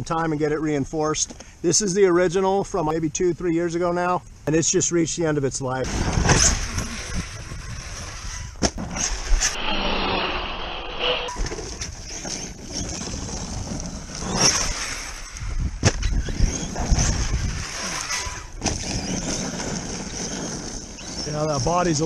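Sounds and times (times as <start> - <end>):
sharp knocks from landings: 5.9 - 9.6, 14.3 - 19.4
electric rc truck motor: 5.9 - 22.0.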